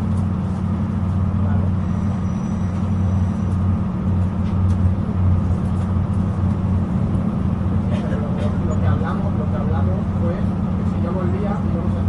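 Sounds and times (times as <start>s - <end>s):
train rumbling on rails: 0.0s - 12.0s.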